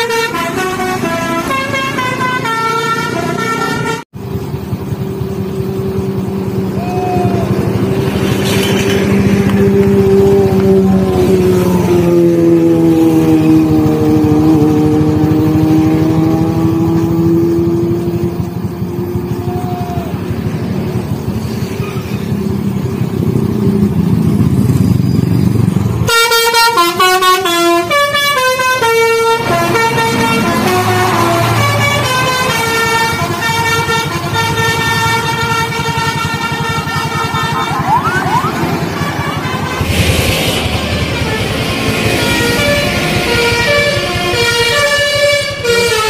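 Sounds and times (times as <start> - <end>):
bus horn low sustained tone: 0.0 - 4.1, 26.0 - 46.0
multi-tone musical horn tune: 0.0 - 4.1, 26.1 - 37.9, 38.8 - 46.0
vehicle noise: 0.0 - 46.0.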